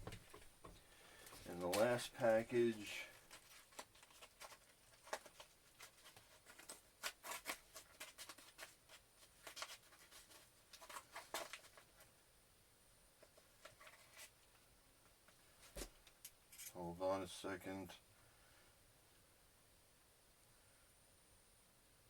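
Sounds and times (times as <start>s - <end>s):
package clicks and rustles: 3.1s - 12.1s.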